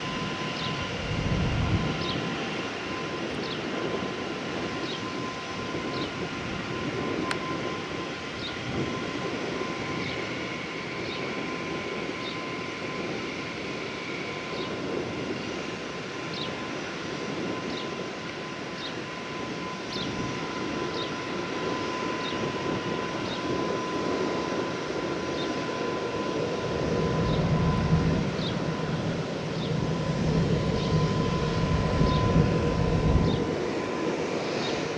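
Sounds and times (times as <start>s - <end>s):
deep jet rumble: 0.0s - 10.0s, 26.2s - 34.9s
jet engines whining: 0.0s - 34.9s.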